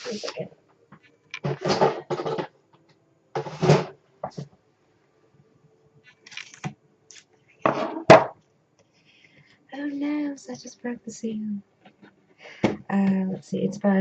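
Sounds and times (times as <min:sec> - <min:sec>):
tape seal tearing open: 0:06.2 - 0:07.3.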